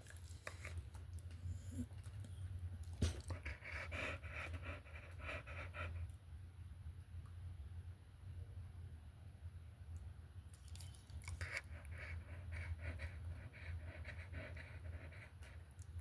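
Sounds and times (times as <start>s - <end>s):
dog chewing wet crunches: 10.5s - 11.7s.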